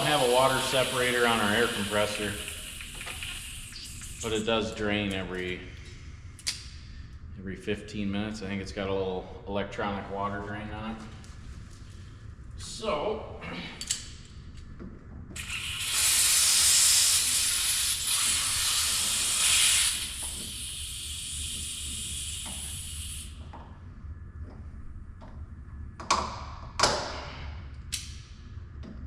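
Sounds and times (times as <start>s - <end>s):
compressed air hissing: 0.0s - 4.6s, 15.4s - 23.5s.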